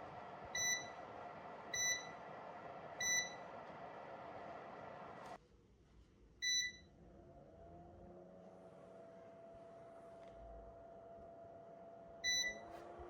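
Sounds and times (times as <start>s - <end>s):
faint steady hum: 0.0s - 7.0s.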